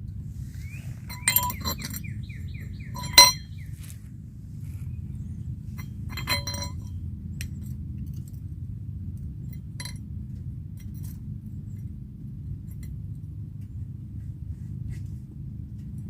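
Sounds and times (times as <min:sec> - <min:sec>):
car engine low rumble: 0:00.0 - 0:16.0
light metallic clinks: 0:01.0 - 0:03.7, 0:05.7 - 0:08.5, 0:09.2 - 0:10.0, 0:10.8 - 0:13.3.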